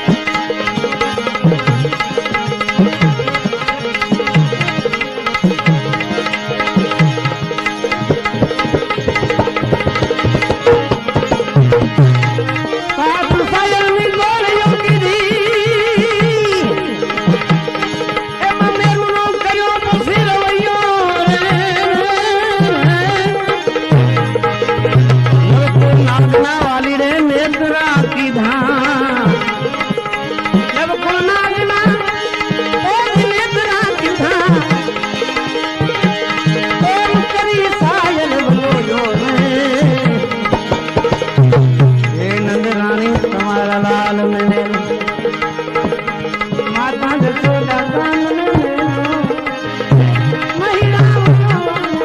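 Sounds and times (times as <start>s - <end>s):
ornamented sliding melody: 0.0s - 52.0s
tabla rhythm: 0.0s - 52.0s.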